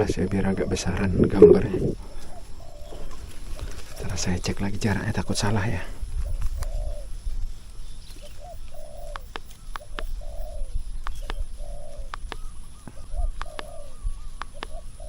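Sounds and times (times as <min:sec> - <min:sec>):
dove cooing: 0:00.0 - 0:15.0
wind rumbling on microphone: 0:00.0 - 0:15.0
sharp clicks: 0:11.0 - 0:13.8, 0:14.4 - 0:14.8.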